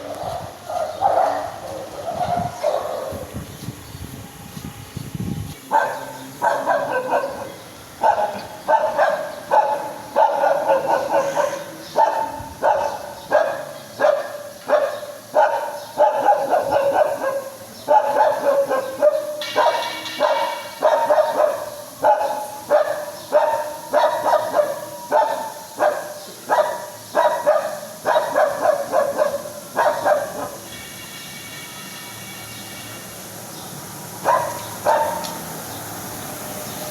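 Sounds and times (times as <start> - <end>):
dog barking high-pitched: 0.0 - 3.3, 5.7 - 30.7, 34.2 - 35.4.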